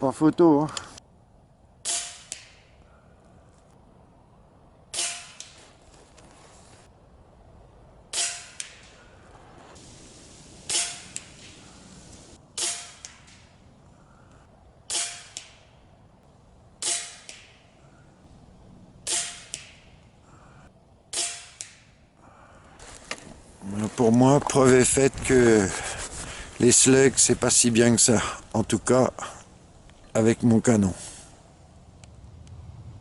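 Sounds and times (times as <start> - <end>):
air rifle shots: 4.9 - 5.6, 10.6 - 11.8, 16.8 - 17.6, 19.0 - 19.9.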